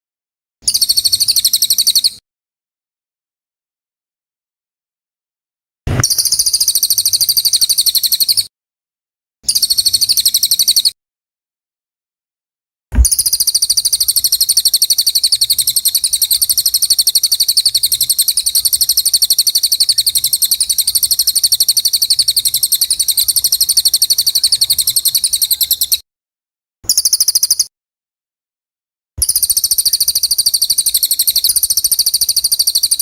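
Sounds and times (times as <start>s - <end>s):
songbird chattering trill: 0.7s - 2.2s, 6.1s - 8.5s, 9.5s - 11.0s, 13.1s - 26.0s, 26.9s - 27.7s, 29.2s - 33.0s.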